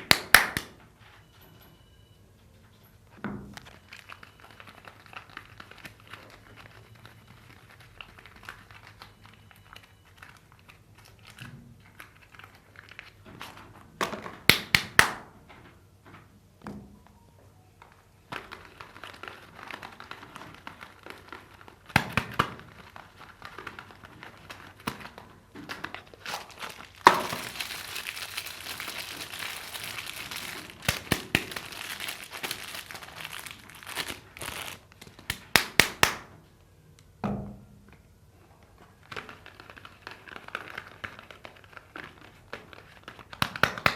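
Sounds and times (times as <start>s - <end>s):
wrapper crinkling: 3.6s - 13.8s, 17.8s - 36.2s, 38.6s - 43.9s.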